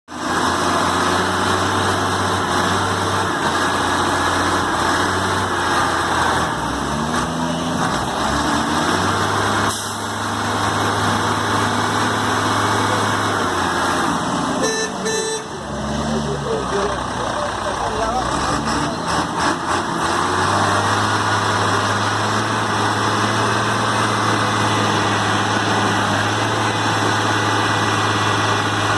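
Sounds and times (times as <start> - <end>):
truck engine running: 0.1 - 28.9
high-pitched tone: 14.6 - 15.6.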